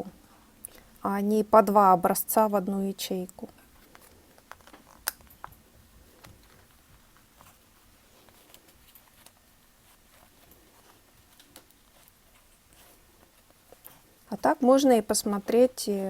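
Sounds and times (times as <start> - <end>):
plastic sheets rustling: 3.4 - 16.0.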